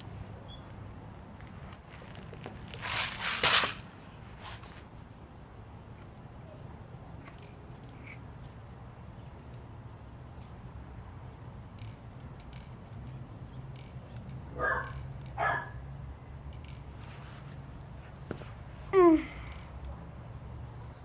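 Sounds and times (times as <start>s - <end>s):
dog barking: 14.6s - 15.8s.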